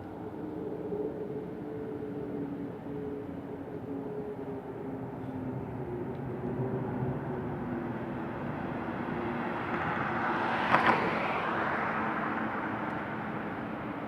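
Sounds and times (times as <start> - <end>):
car passing tyre noise: 9.3 - 13.5.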